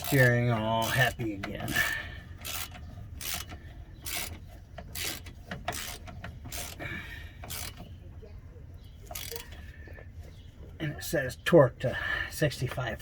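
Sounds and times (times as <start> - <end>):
ratchet wrench clicking: 0.0 - 6.8, 7.4 - 7.8, 9.1 - 9.4.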